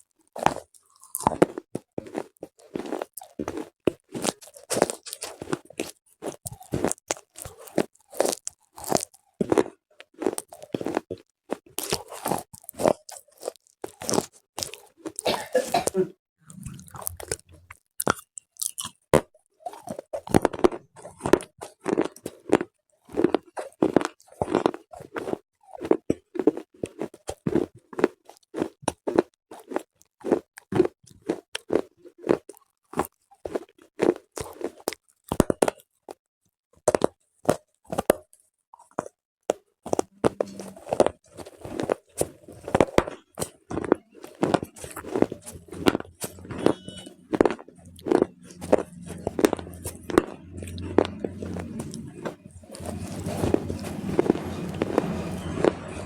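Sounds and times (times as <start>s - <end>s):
brittle crunching bites: 0.4s - 15.3s, 16.5s - 35.8s, 39.9s - 55.8s.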